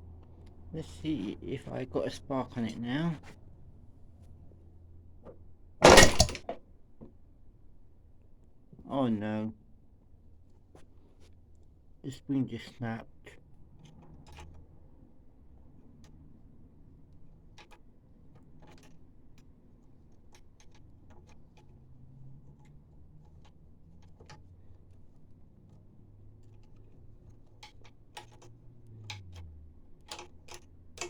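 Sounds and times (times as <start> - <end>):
faint clicks and taps: 17.1 - 31.0.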